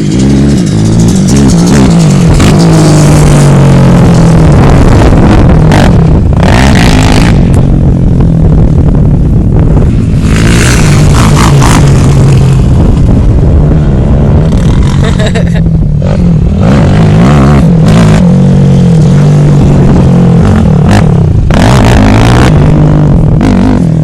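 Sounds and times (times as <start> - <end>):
atv engine revving: 0.0 - 24.0.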